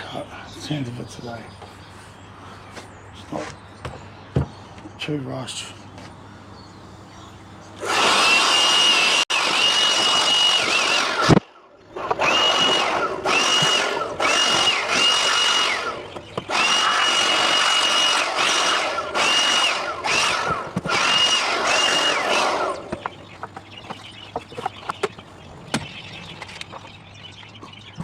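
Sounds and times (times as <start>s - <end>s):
power tool whining: 5.9s - 26.7s.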